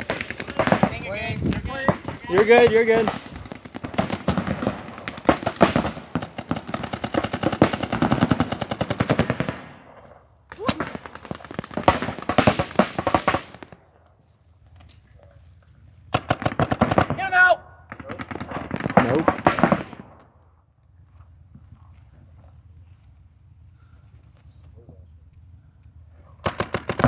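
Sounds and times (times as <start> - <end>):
paintball markers firing: 0.0 - 9.7, 10.5 - 14.2, 16.1 - 17.2, 26.4 - 27.0.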